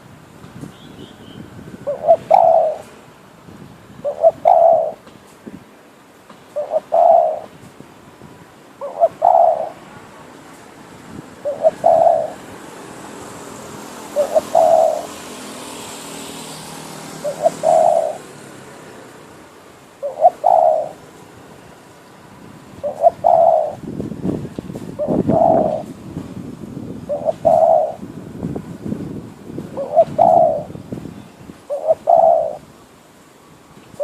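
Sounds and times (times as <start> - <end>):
dove cooing: 1.8 - 2.9, 4.0 - 5.0, 6.6 - 7.6, 8.8 - 9.8, 11.4 - 12.5, 14.1 - 15.2, 17.1 - 18.3, 20.0 - 21.0, 22.8 - 23.8, 25.0 - 25.9, 27.1 - 28.0, 29.7 - 30.8, 31.7 - 32.7.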